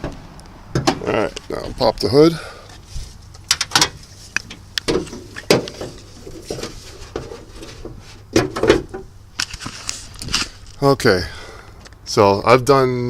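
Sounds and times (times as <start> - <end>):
car hood clicks and metal knocks: 0.0 - 1.2, 3.5 - 9.1.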